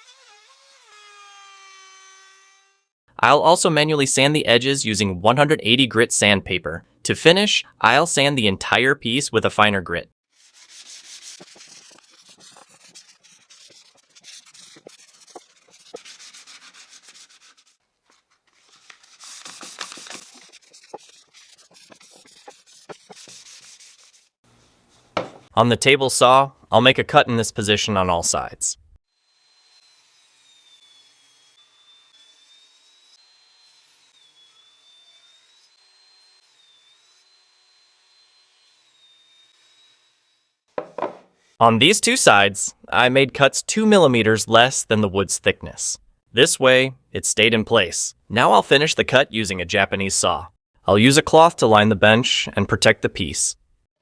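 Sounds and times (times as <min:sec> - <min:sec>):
sandpaper rubbing on wood: 0:10.3 - 0:17.8, 0:18.6 - 0:24.4.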